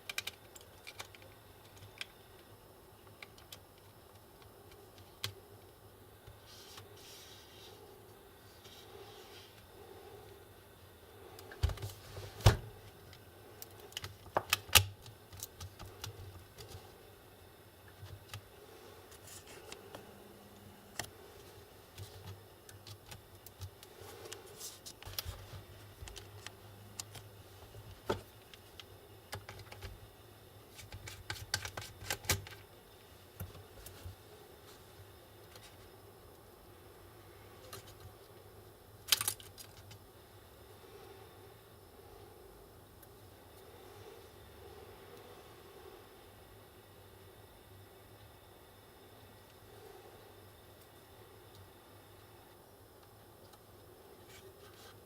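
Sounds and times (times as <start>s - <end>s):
clicks of small tools and plastic parts: 0.0s - 2.2s, 39.1s - 40.0s.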